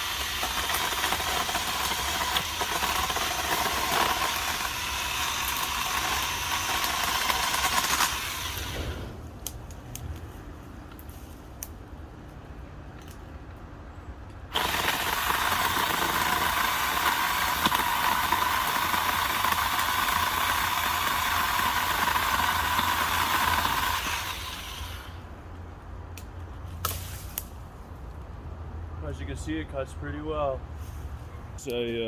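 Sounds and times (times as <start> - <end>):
chainsaw cutting wood: 0.0 - 9.2, 14.5 - 25.2.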